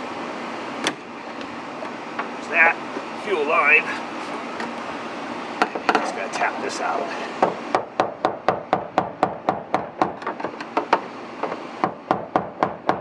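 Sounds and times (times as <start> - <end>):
steady hiss: 0.0 - 7.8.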